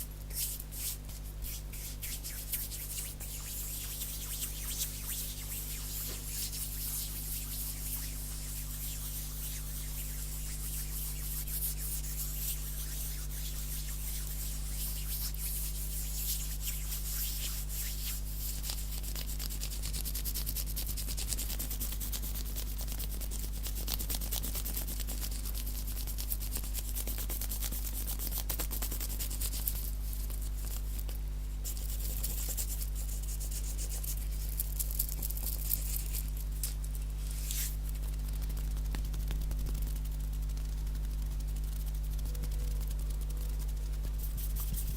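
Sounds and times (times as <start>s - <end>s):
steady low hum: 0.0s - 44.9s
hands rubbing together: 0.3s - 19.8s, 35.7s - 44.9s.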